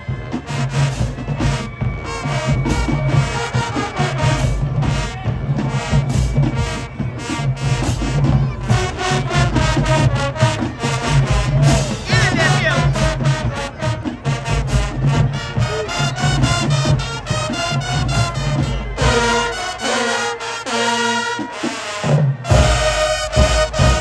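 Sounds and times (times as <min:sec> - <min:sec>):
drum beat: 0:00.0 - 0:19.8, 0:22.4 - 0:24.0
school band playing upbeat tune: 0:00.0 - 0:24.0.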